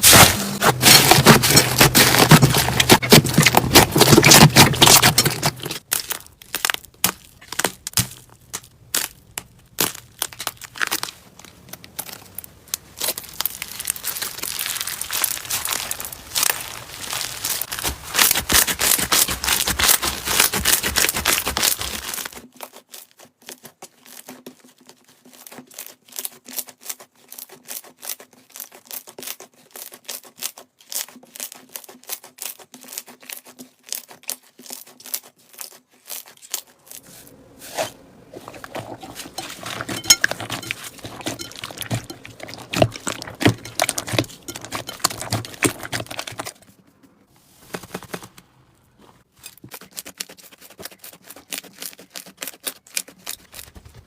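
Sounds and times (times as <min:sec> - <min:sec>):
slime crackling and popping: 0:00.0 - 0:23.0.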